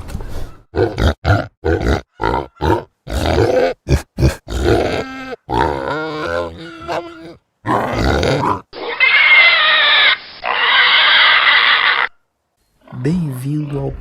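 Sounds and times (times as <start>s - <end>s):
pigs grunting: 0.7s - 8.9s
pigs squealing shrilly: 0.7s - 12.2s.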